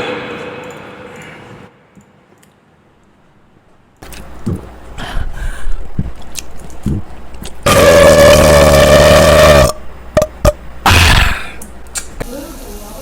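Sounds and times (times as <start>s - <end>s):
mouth clicks and gulps: 5.8s - 7.6s
man belching: 7.6s - 10.3s.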